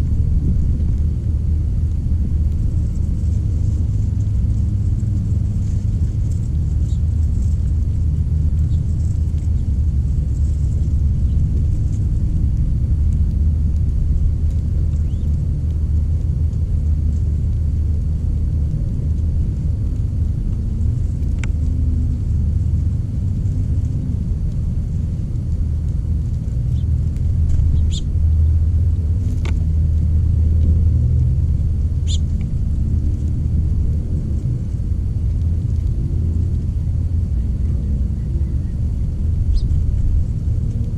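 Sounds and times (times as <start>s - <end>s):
steady low rumble: 0.0s - 40.9s
bird chirps: 27.7s - 28.1s, 32.0s - 32.2s, 39.5s - 39.7s.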